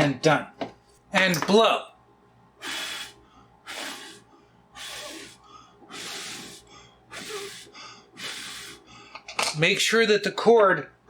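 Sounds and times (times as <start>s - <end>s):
short puffs of breath: 2.6s - 9.2s.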